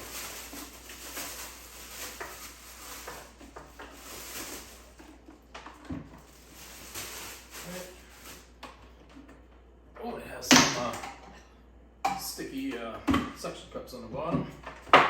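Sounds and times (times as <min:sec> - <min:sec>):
plastic wrapping crinkling: 0:00.0 - 0:08.8.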